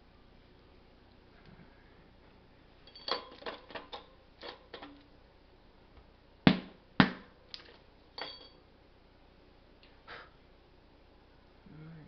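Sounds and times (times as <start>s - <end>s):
metal parts clinking: 2.9s - 5.0s, 7.6s - 8.6s.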